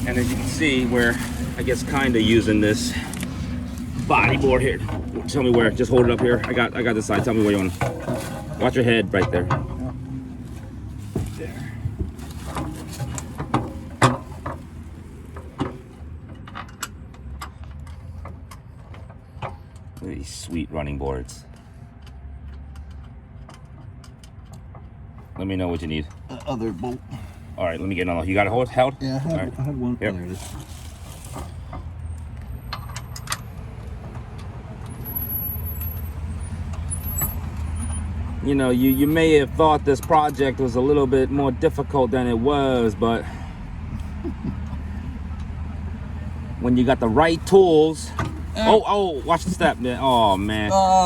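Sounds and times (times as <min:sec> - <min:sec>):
vehicle engine rumbling: 0:00.0 - 0:51.0
metal clicks and knocks: 0:11.2 - 0:20.2, 0:21.5 - 0:27.0, 0:31.3 - 0:35.0.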